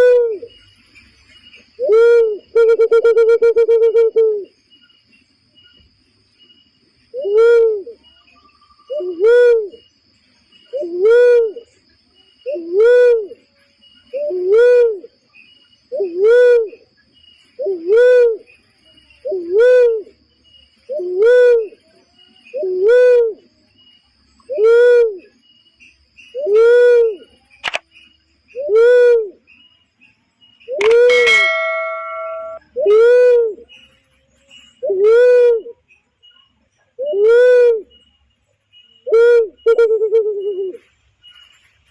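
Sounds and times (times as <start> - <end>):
dove cooing: 39.1 - 40.8.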